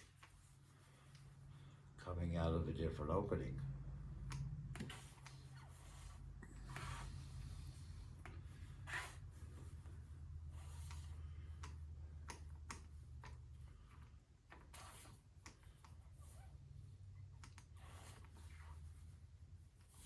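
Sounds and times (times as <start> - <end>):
steady low hum: 0.0 - 14.5.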